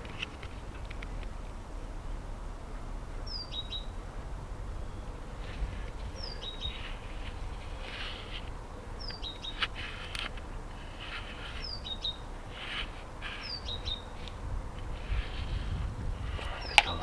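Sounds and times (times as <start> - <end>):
light clicks: 0.0 - 1.7, 5.4 - 15.4
bird chirping: 0.0 - 17.0.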